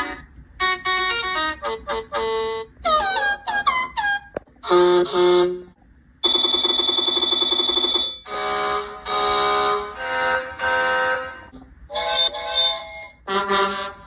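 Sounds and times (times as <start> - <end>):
cartoon train horns and whistles: 8.3 - 14.0.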